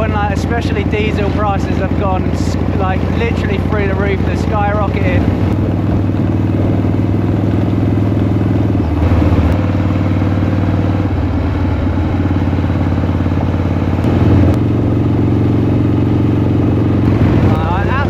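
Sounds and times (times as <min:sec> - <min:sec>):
motorcycle engine running: 0:00.0 - 0:18.0.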